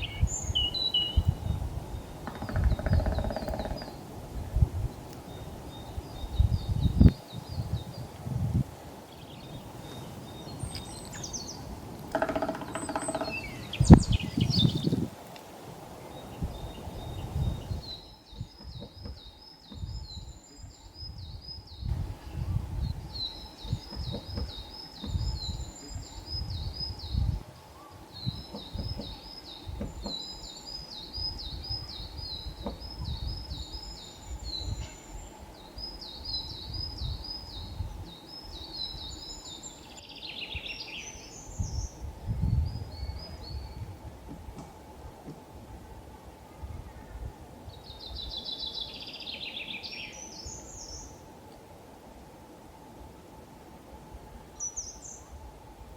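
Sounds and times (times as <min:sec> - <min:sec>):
small bird singing: 0:00.0 - 0:15.1, 0:16.0 - 0:44.0, 0:46.6 - 0:51.3
woodpecker drumming on wood: 0:02.2 - 0:04.1, 0:12.0 - 0:14.2, 0:17.9 - 0:20.0, 0:23.6 - 0:25.6, 0:28.2 - 0:30.6, 0:32.5 - 0:33.4.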